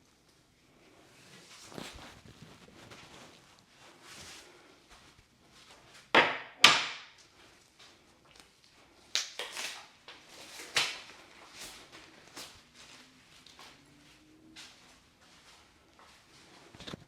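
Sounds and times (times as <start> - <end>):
knocks and thuds on a table: 6.2 - 7.0.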